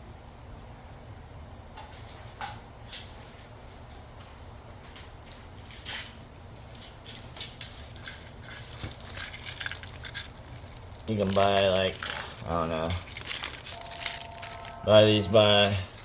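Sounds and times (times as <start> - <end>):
clicks and rustles of small objects: 5.0 - 16.0
low hum: 8.0 - 16.0.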